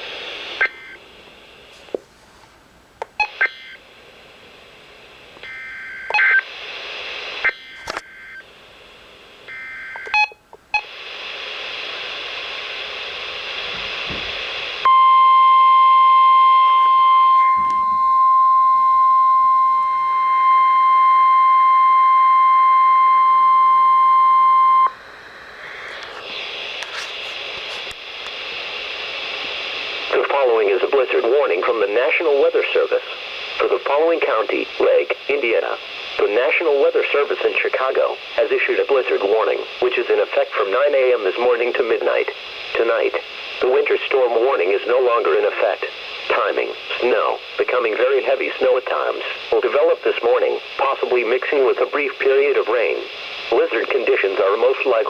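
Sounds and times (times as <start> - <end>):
radio hiss: 0.0 - 2.1, 6.3 - 9.5, 10.6 - 14.8, 24.9 - 55.0.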